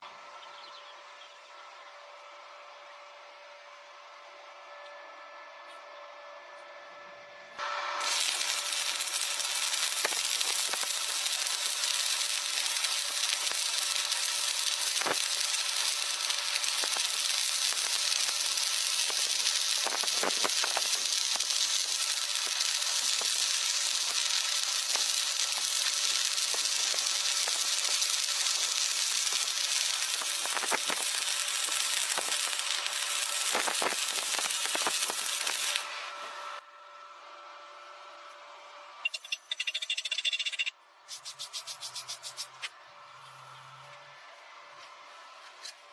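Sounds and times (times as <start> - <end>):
welding arc sizzling and crackling: 7.6 - 36.6, 39.0 - 43.7.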